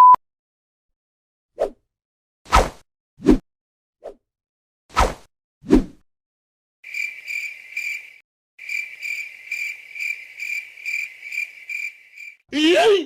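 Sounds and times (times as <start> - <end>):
crickets chirping: 6.8 - 12.4.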